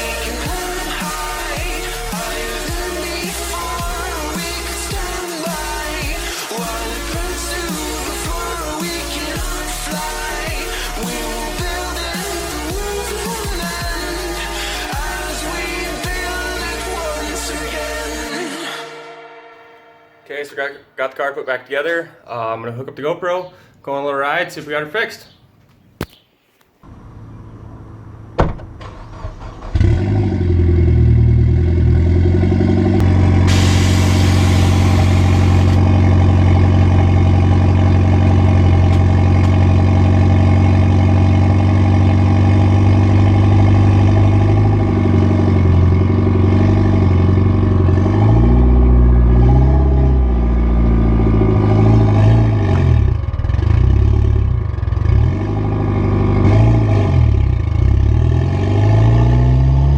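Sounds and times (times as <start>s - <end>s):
car engine revving: 0.0s - 18.3s, 26.8s - 59.9s
loud hiss: 33.3s - 35.8s.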